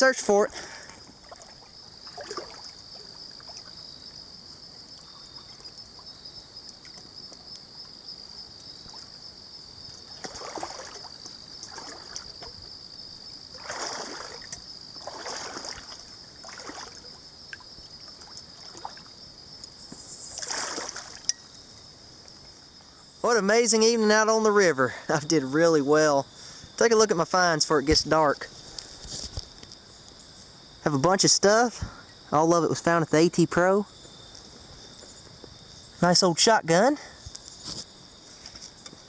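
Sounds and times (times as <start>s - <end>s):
water splashing in a river: 0.0s - 3.8s, 10.0s - 12.6s, 13.5s - 19.2s, 20.3s - 21.4s.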